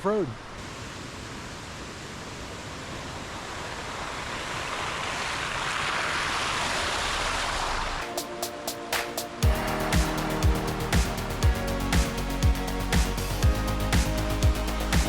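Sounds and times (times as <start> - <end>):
steady rushing noise: 0.4 - 15.0
music with ticking beat: 8.1 - 15.0.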